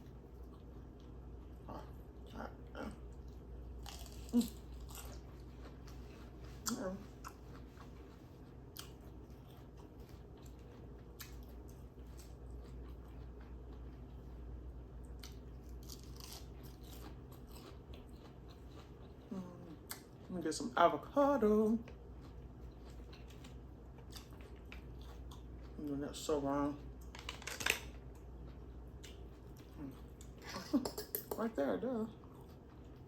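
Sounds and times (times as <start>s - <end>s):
chewing and crunching lettuce: 0.0s - 33.0s.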